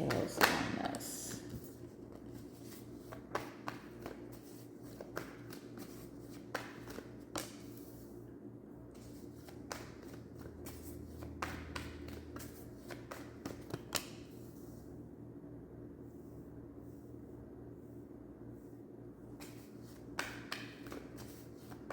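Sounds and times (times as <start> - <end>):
faint electrical hum: 0.0 - 21.9
cards shuffling flicks and taps: 1.3 - 8.0, 8.9 - 14.4, 19.3 - 21.9.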